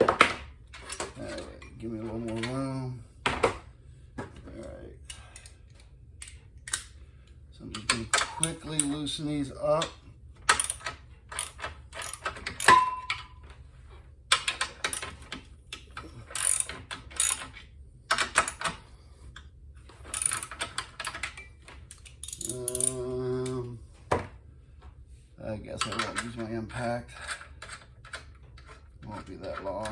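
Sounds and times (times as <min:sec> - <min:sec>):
ratchet wrench clicking: 0:10.5 - 0:12.8, 0:16.3 - 0:17.5, 0:20.1 - 0:21.2, 0:22.0 - 0:23.1
short metallic ring: 0:12.6 - 0:13.4.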